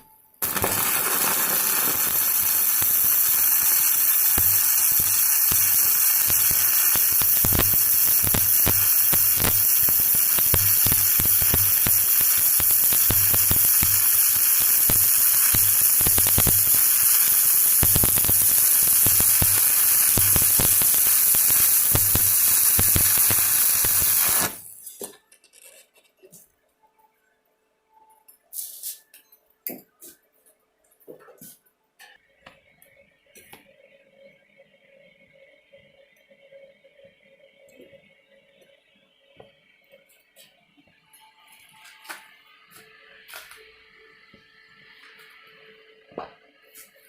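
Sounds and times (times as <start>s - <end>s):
welding arc crackling: 0.4s - 24.8s.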